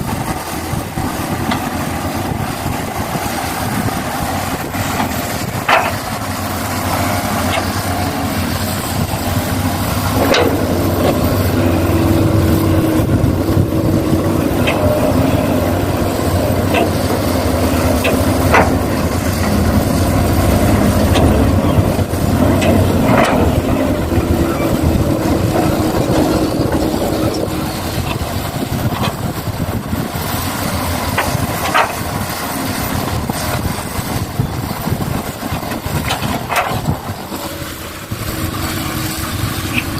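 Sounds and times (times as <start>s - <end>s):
model excavator whining: 0.0s - 39.9s.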